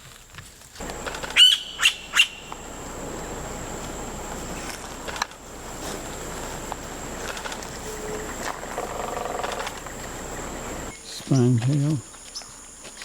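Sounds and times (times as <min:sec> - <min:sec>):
bird calling sharply: 0:00.9 - 0:02.7.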